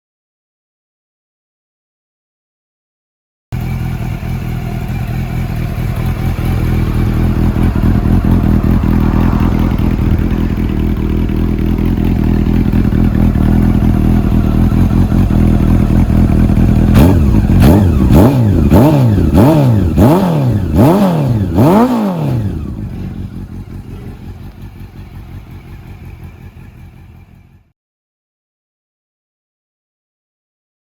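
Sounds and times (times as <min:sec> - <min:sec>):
motorcycle engine idling: 0:03.6 - 0:27.7
motorcycle engine revving: 0:03.6 - 0:27.7.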